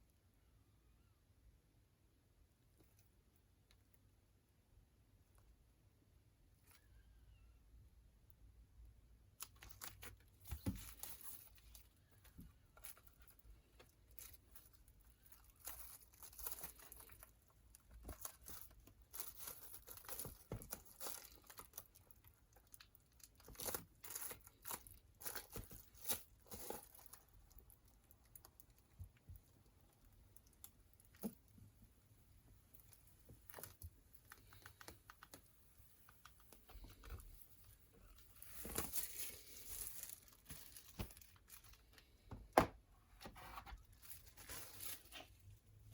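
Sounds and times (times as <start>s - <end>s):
packaging torn and crinkled: 14.1s - 28.8s, 38.4s - 42.0s.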